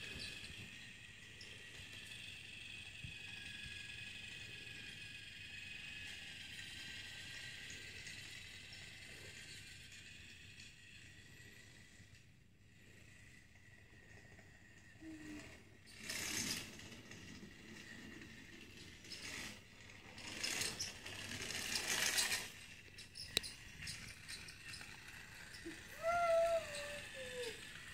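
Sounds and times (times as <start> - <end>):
small mechanism rattling: 14.6 - 27.9.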